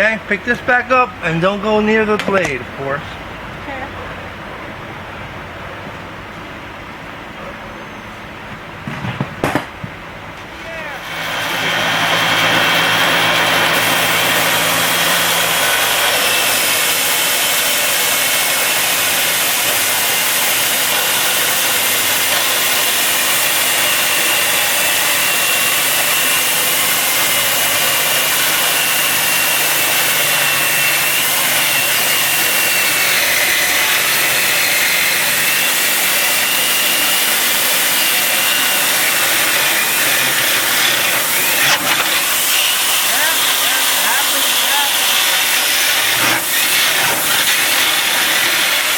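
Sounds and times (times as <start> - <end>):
table saw cutting plastic: 10.9 - 48.9.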